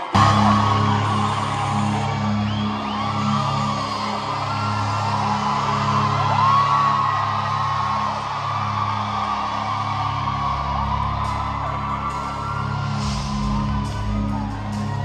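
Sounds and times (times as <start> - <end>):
band playing sustained chords: 0.0 - 15.0.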